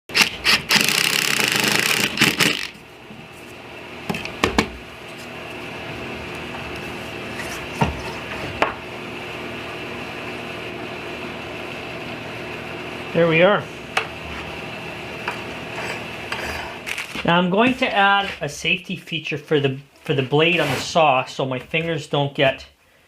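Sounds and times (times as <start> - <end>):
power tool running: 0.1 - 2.8, 5.9 - 18.5
steady shop hum: 0.1 - 23.0.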